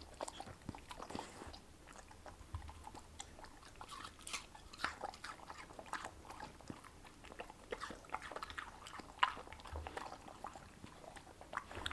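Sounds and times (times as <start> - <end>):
dog chewing watermelon: 0.0 - 11.9.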